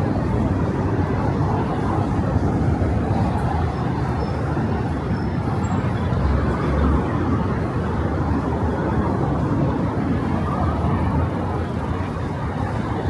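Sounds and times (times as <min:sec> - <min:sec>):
city street traffic rumble: 0:00.0 - 0:13.0.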